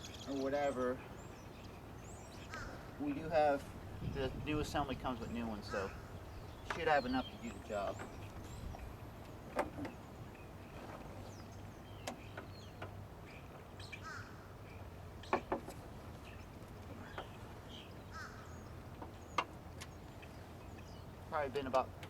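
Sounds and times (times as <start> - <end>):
bird chirps: 0.0 - 21.9.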